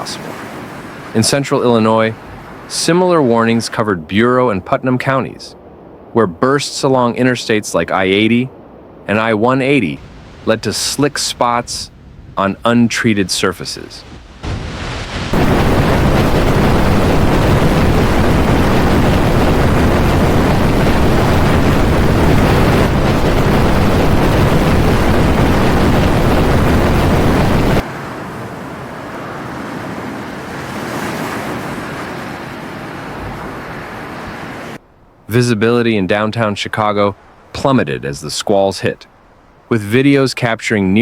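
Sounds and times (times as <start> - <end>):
strong wind on microphone: 8.0 - 12.9, 14.0 - 34.8.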